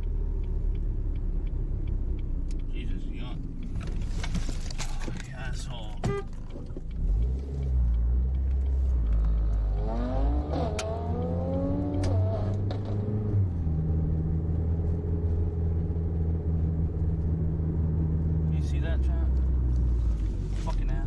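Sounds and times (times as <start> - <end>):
vehicle engine revving: 6.0 - 21.0.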